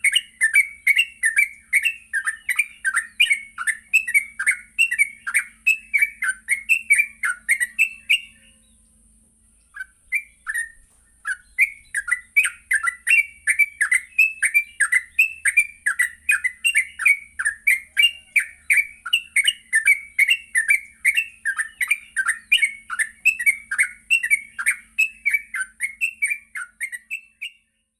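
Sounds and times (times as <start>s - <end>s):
bird singing down-slurred notes: 0.0s - 27.9s.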